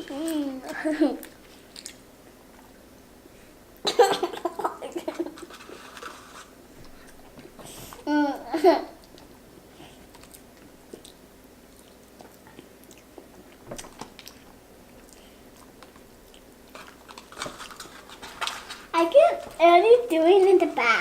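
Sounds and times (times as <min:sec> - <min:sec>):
small crunches: 0:10.1 - 0:18.9.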